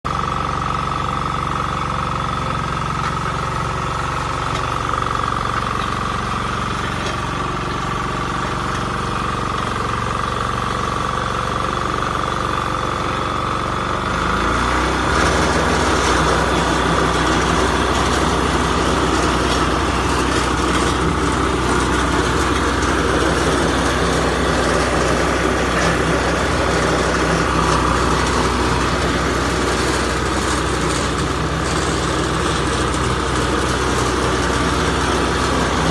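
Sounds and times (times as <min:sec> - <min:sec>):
construction machine engine: 0:00.0 - 0:35.9.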